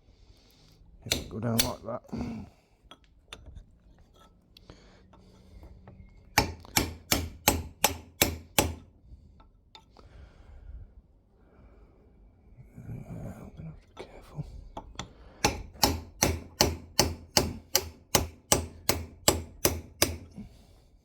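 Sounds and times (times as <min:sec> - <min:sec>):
tools tapping and scraping metal: 0:01.0 - 0:01.9, 0:02.9 - 0:04.4, 0:05.1 - 0:08.8, 0:09.4 - 0:09.9, 0:14.7 - 0:20.4
hammer striking metal: 0:01.1 - 0:01.8, 0:06.4 - 0:08.8, 0:15.0 - 0:20.3.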